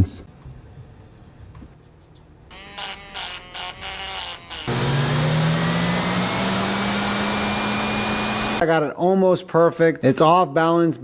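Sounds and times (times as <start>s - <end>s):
loud steady machine whir: 4.6s - 8.6s.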